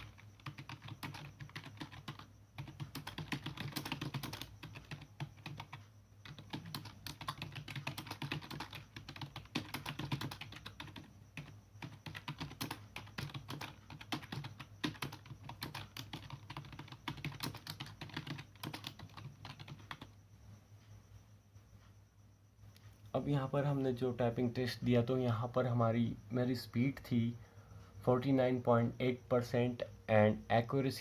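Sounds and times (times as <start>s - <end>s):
typing on computer keyboard: 0.0s - 20.2s.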